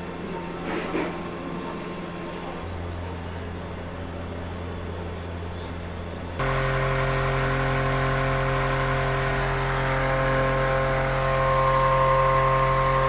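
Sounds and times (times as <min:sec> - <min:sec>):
electric motor hum: 0:06.2 - 0:13.0.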